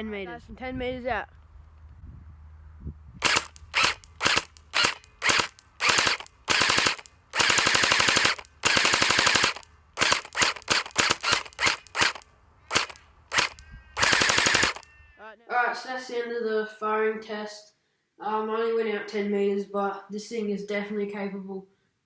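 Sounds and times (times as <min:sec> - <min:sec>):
toy blaster gearbox firing: 0:03.2 - 0:14.9.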